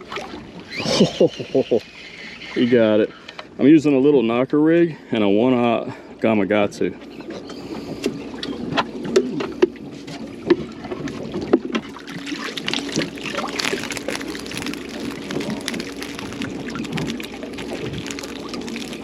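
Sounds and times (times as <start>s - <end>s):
water lapping against boat hull: 0.0s - 3.4s, 7.0s - 19.0s
small splashes: 11.0s - 19.0s.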